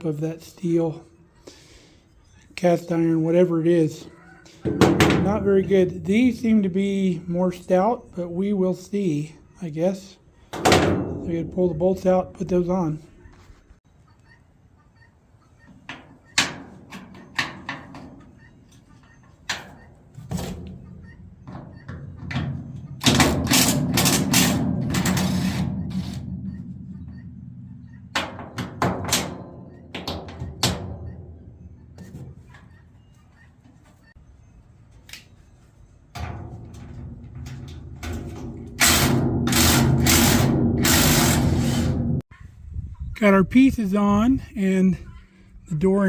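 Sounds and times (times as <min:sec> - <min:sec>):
metal knocks and clanks: 0:04.6 - 0:06.2, 0:19.5 - 0:32.7, 0:36.1 - 0:42.1
power tool driving bolts: 0:23.0 - 0:26.2, 0:38.8 - 0:42.1.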